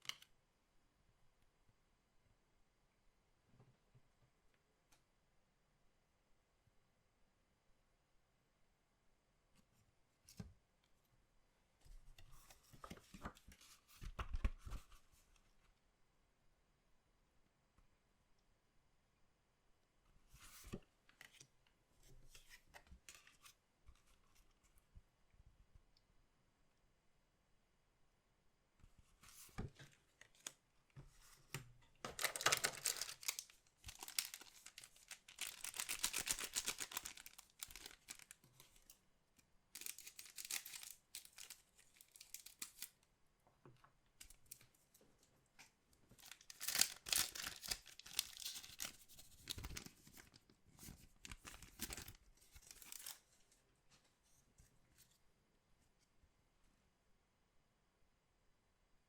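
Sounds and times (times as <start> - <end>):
packaging torn and crinkled: 32.1 - 38.9, 39.8 - 42.9, 46.2 - 50.2, 51.2 - 53.2.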